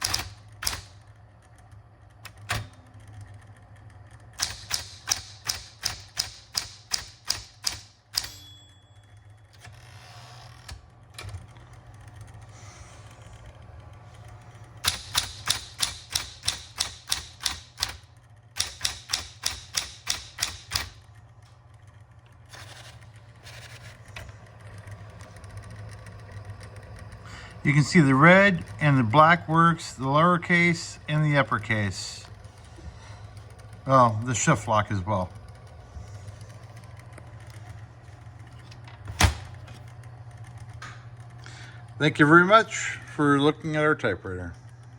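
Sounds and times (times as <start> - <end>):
typewriter keystrokes: 0.0 - 1.0, 4.3 - 8.3, 14.8 - 21.0
typewriter motor humming: 0.0 - 8.4, 9.1 - 44.9
typewriter bell ring: 8.1 - 9.5.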